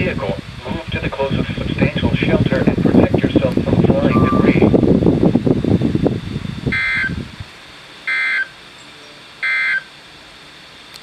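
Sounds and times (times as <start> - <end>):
buzzy digital data tones: 0.0 - 10.9.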